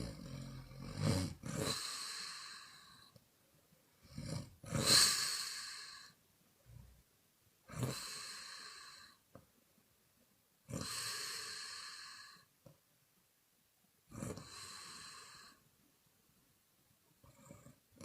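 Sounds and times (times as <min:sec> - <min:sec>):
woman snoring: 0:00.0 - 0:03.1, 0:04.0 - 0:06.2, 0:07.7 - 0:09.2, 0:10.7 - 0:12.5, 0:14.1 - 0:15.6.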